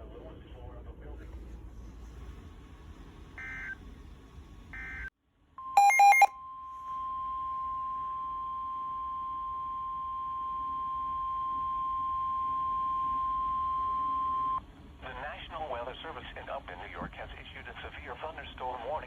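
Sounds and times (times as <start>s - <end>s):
data tones squawking: 5.8s - 6.3s
steady alarm tone: 5.8s - 6.3s.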